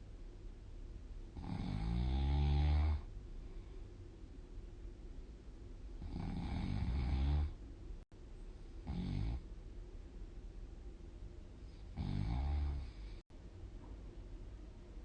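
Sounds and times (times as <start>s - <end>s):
person snoring: 1.4s - 3.1s, 6.0s - 7.6s, 11.8s - 13.2s
quiet breathing: 2.6s - 4.4s, 11.5s - 13.3s.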